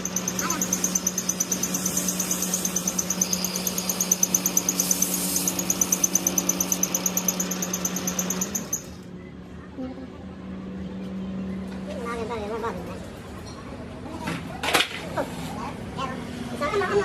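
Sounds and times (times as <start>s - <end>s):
high-pitched chirping pulse: 0.0s - 9.1s
low machine hum: 0.0s - 14.4s.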